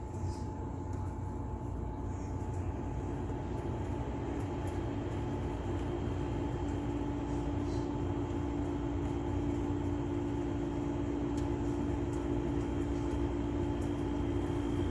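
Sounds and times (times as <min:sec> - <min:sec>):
window air conditioner humming: 0:00.0 - 0:14.9.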